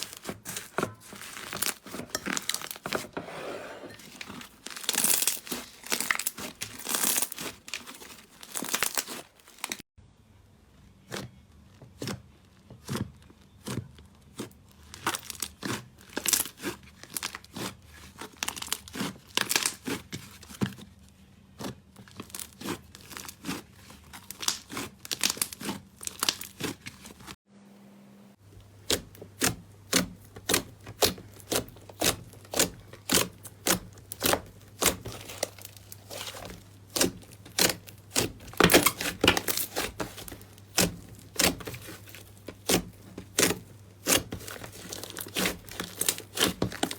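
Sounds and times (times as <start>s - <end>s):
slime crackling and popping: 4.2s - 9.8s, 13.6s - 20.0s, 22.1s - 27.3s, 28.8s - 46.9s.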